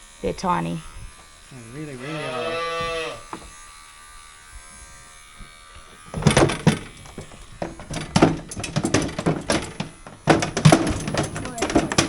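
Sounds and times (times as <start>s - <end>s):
knocking and rattling: 6.1s - 12.0s.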